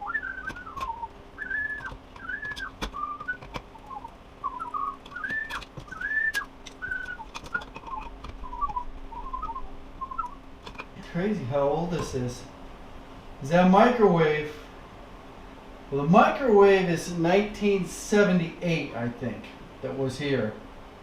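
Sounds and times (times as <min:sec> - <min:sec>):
man whistling: 0:00.0 - 0:10.4
tools clicking and tapping: 0:00.4 - 0:08.8, 0:10.6 - 0:11.0.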